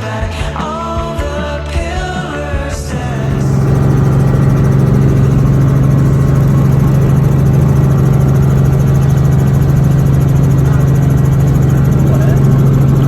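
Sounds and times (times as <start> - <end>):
helicopter engine and rotors: 2.8 - 13.0.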